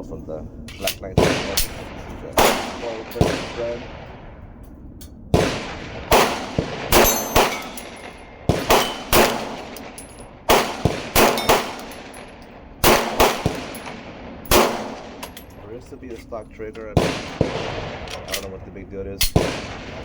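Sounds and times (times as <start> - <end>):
pistol shots: 1.2 - 4.2, 5.3 - 15.6, 17.0 - 18.6, 19.2 - 20.0
steel targets clanging: 6.9 - 10.4, 11.2 - 12.5.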